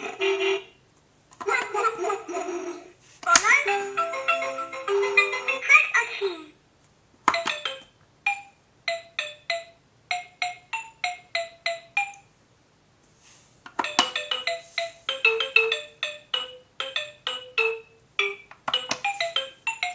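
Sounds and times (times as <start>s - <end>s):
tinkling electronic melody: 7.4s - 12.3s, 13.8s - 19.9s.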